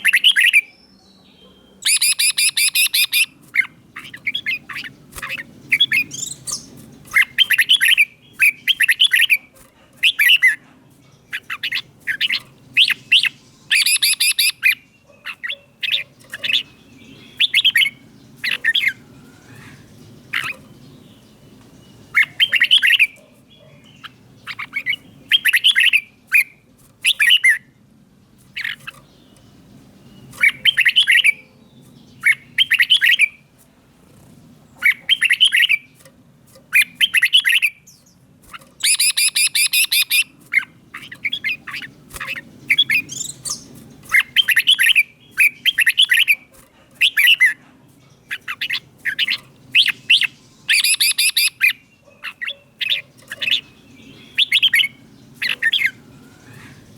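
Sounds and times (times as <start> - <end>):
bird singing whistled phrases: 0.0 - 3.3, 11.6 - 14.8, 17.2 - 18.0, 32.3 - 33.4, 38.8 - 40.3, 48.6 - 51.8
bird chattering: 0.0 - 27.8, 28.4 - 56.9.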